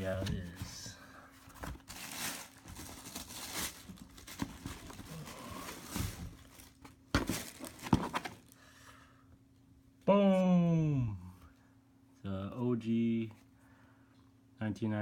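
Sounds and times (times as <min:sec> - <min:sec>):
paper and cardboard crinkling: 0:00.0 - 0:08.6
knocks on cardboard box: 0:07.1 - 0:08.3.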